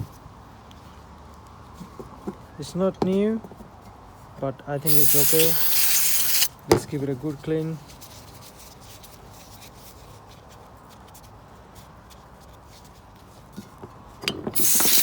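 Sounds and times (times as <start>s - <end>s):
aerosol spray hissing: 4.9s - 6.5s, 14.6s - 15.0s
faint rubbing of small parts: 4.9s - 6.5s, 14.6s - 15.0s.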